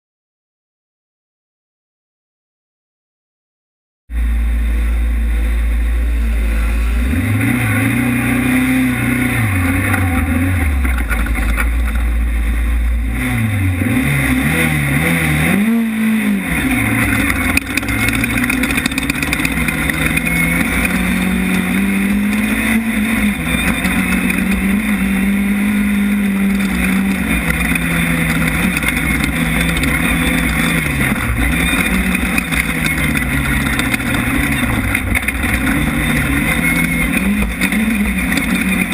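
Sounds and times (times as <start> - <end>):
steady loud noise: 4.1 - 38.9
race car engine revving: 4.2 - 38.9.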